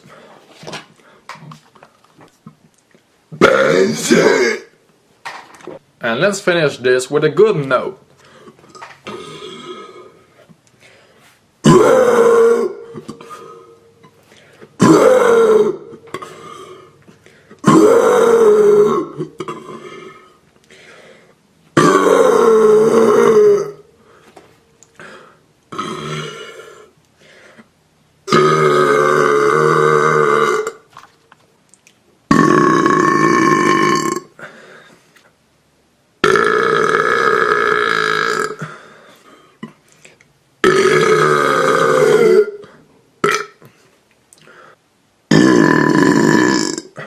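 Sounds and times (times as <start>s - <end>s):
man belching: 3.4s - 4.8s, 8.7s - 10.2s, 11.6s - 14.2s, 14.8s - 17.0s, 17.6s - 20.3s, 21.8s - 23.9s, 25.7s - 26.9s, 28.3s - 30.9s, 32.3s - 34.4s, 36.2s - 38.7s, 40.6s - 43.6s, 45.3s - 47.0s.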